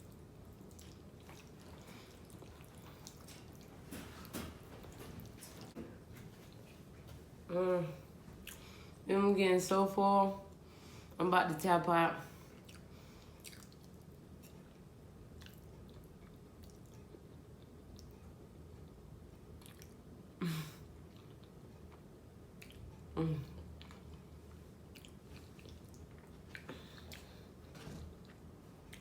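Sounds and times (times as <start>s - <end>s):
person chewing food: 0.0s - 7.2s, 12.4s - 18.9s, 19.5s - 20.1s, 21.0s - 29.0s.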